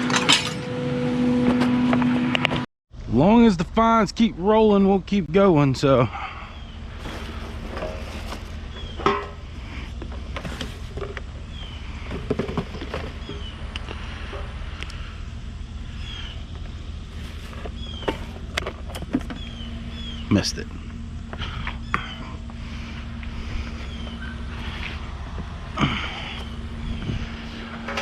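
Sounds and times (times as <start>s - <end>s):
vehicle rumble and hum: 0.0s - 28.0s
knocks and rattles: 12.1s - 13.5s.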